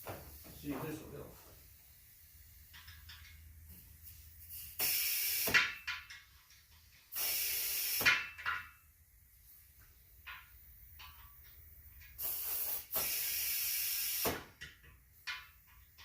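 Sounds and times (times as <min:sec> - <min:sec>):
compressed air bursts: 0:00.0 - 0:02.7, 0:03.8 - 0:05.8, 0:07.1 - 0:08.3, 0:12.2 - 0:14.6.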